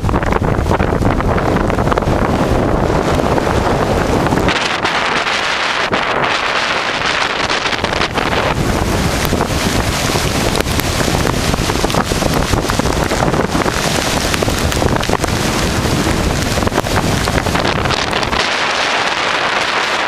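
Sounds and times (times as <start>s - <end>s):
ocean surf: 0.0s - 20.0s
wind buffeting microphone: 0.0s - 20.0s.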